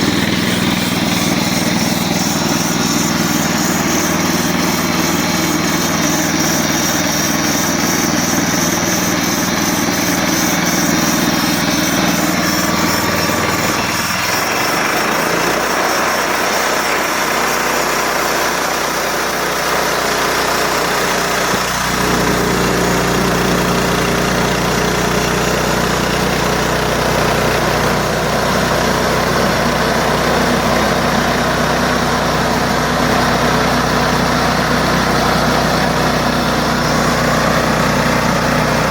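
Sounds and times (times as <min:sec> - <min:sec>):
sawmill gasoline engine running: 0:00.0 - 0:38.9.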